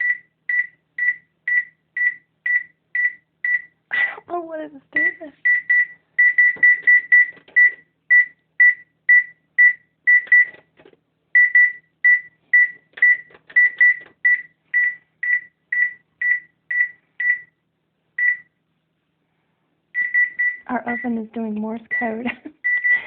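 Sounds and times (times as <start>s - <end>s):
electronic oven beeping: 0.0s - 3.8s, 5.0s - 10.6s, 11.3s - 17.6s, 18.2s - 18.6s, 19.9s - 21.2s, 21.9s - 23.0s.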